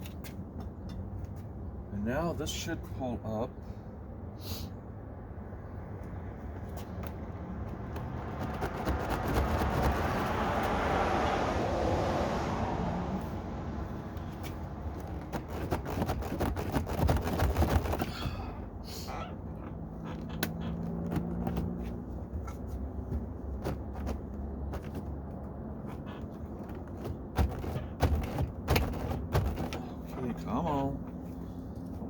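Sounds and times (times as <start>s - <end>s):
plastic trim panel clicking and scraping: 15.0s - 18.1s, 19.6s - 21.8s, 22.4s - 29.8s.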